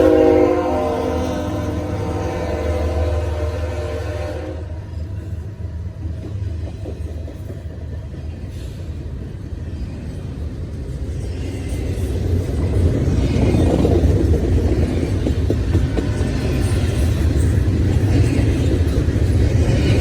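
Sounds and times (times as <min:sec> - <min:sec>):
freight train rumbling past: 0:00.0 - 0:20.0
train wheels clicking: 0:04.9 - 0:20.0.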